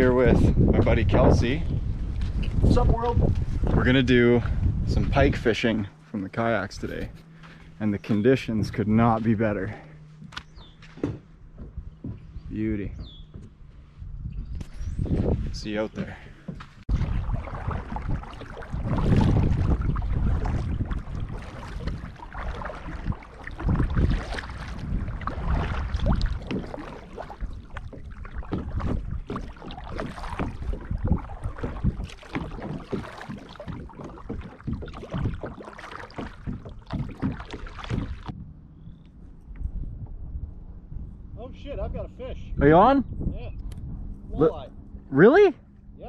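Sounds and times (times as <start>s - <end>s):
paddle splashing in water: 16.0s - 38.4s.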